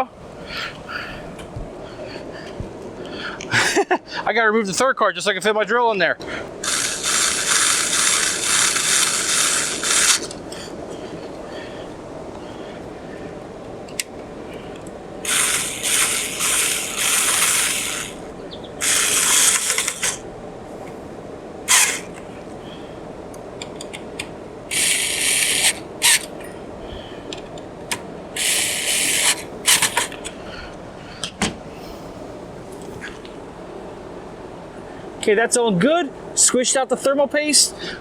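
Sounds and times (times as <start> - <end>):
cordless drill driving screws: 6.6 - 10.7, 15.2 - 18.2, 18.8 - 20.2, 21.7 - 22.1, 24.7 - 26.3, 28.4 - 30.2.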